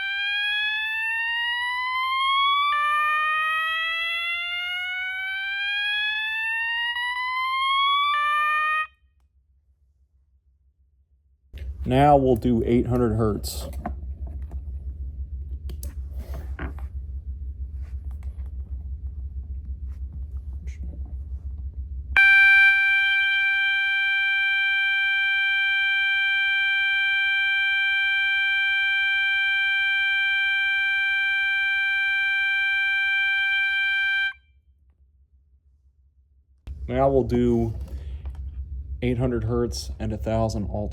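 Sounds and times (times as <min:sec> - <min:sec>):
buzzy horn tone: 0:00.0 - 0:08.9, 0:22.2 - 0:34.4
low hum: 0:00.0 - 0:08.9, 0:11.6 - 0:35.0, 0:36.7 - 0:40.9.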